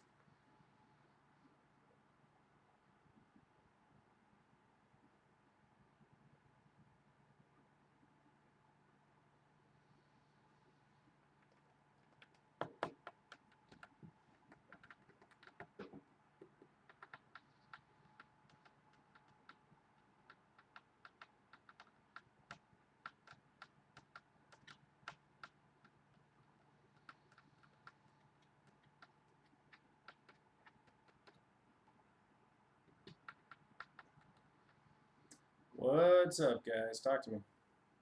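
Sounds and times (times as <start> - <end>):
faint steady hum: 0.0 - 38.0
typing on computer keyboard: 11.4 - 31.4, 33.0 - 34.8.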